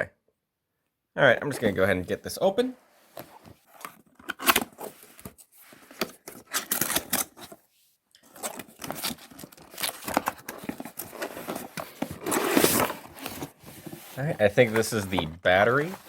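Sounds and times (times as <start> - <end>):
packaging scraping and rustling: 3.2 - 7.6, 8.2 - 16.0
cardboard box being opened: 8.3 - 16.0.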